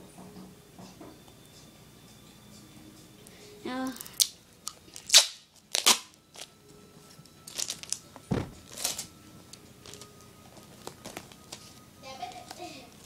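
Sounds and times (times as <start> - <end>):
paper crinkling and rustling: 7.4 - 9.1, 9.8 - 12.6
dull thump: 8.3 - 8.6.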